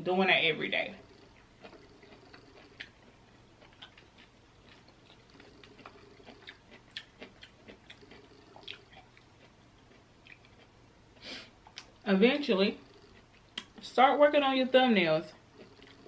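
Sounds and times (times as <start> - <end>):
person chewing: 0.9 - 12.0, 12.8 - 13.9, 15.4 - 16.0
short breath: 11.2 - 11.6
wet mouth clicks: 12.9 - 13.8.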